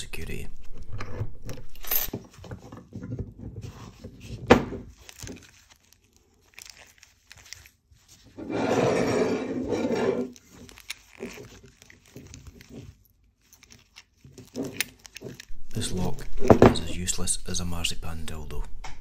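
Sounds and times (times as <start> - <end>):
loud scraping rub: 8.4 - 10.4.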